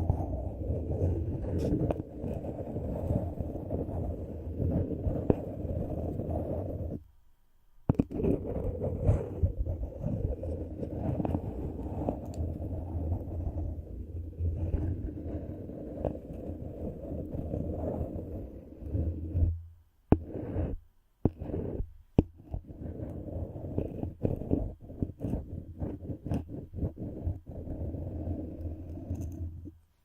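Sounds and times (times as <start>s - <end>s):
rubbing against microphone: 0.0s - 7.1s, 7.9s - 29.8s
short taps and scrapes: 7.9s - 12.6s, 18.8s - 27.8s.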